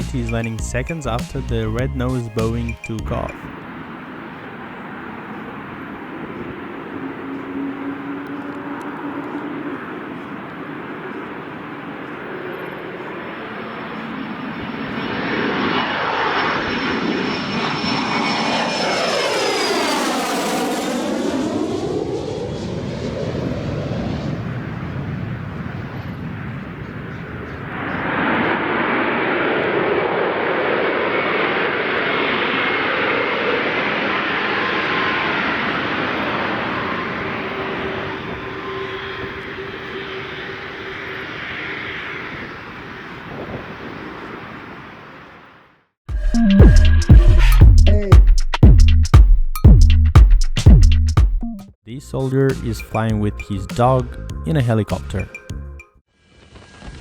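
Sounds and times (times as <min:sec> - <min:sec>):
steady jet noise: 0:02.3 - 0:26.0, 0:27.6 - 0:44.6
jet engines passing overhead: 0:03.4 - 0:45.8.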